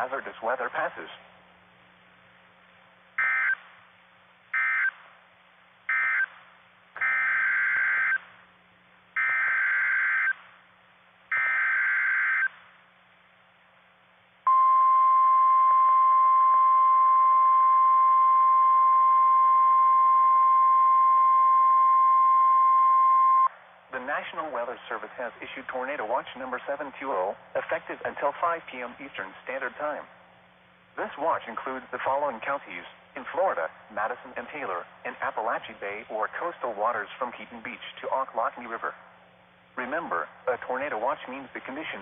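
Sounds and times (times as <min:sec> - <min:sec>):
steady warning alarm tone: 0:03.2 - 0:03.6, 0:04.6 - 0:05.0, 0:05.9 - 0:06.4, 0:07.0 - 0:08.3, 0:09.2 - 0:10.4, 0:11.3 - 0:12.6.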